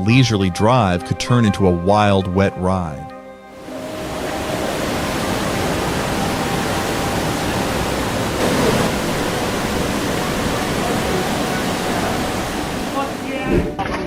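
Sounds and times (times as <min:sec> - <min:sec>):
floodwater rushing: 0:03.6 - 0:13.8.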